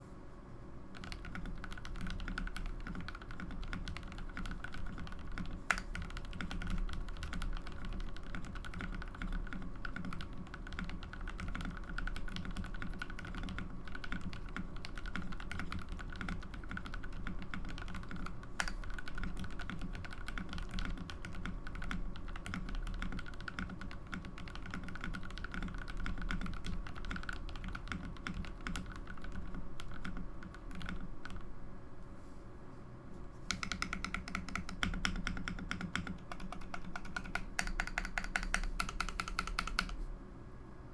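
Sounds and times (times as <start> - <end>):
mechanical keyboard key clacks: 33.5 - 39.9.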